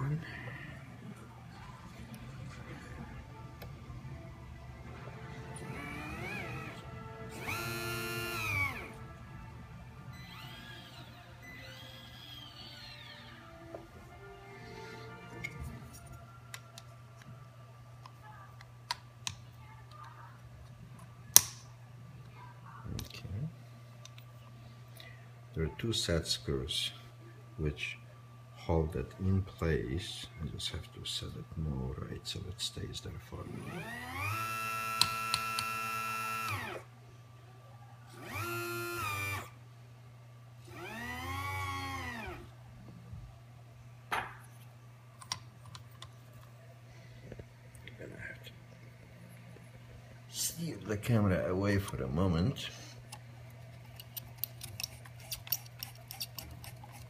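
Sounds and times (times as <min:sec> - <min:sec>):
faint low hum: 0:00.0 - 0:57.0
power drill motor whine: 0:05.6 - 0:09.0, 0:10.2 - 0:13.3, 0:33.6 - 0:36.9, 0:38.2 - 0:39.6, 0:40.7 - 0:42.5.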